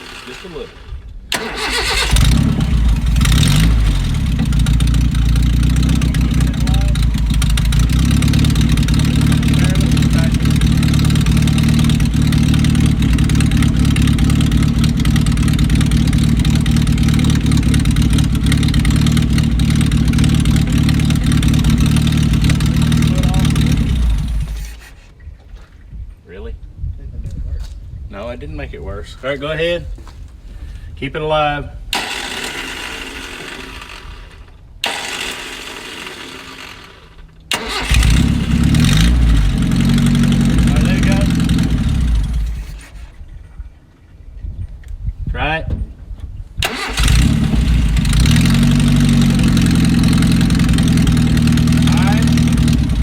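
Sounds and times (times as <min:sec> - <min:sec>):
car engine running above idle: 0:00.0 - 0:24.9, 0:32.0 - 0:43.0, 0:46.7 - 0:53.0.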